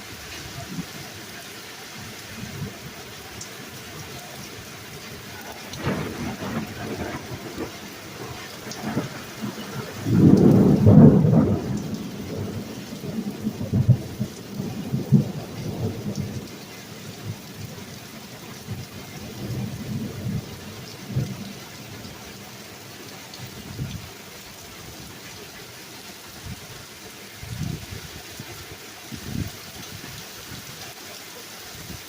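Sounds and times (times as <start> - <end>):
pouring rain: 0.0 - 32.0
thunder rumbling: 4.3 - 22.4.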